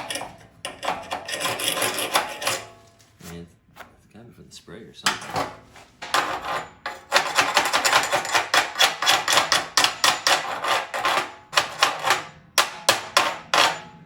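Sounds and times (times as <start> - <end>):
hammer tapping on metal: 11.5 - 13.9.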